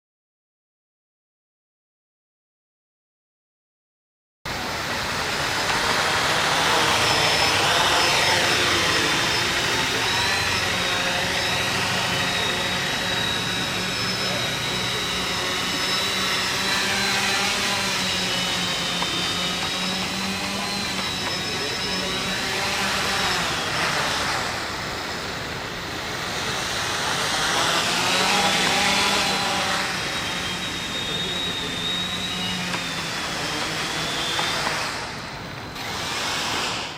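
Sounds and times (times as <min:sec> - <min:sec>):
drone motors whining: 0:04.5 - 0:36.9.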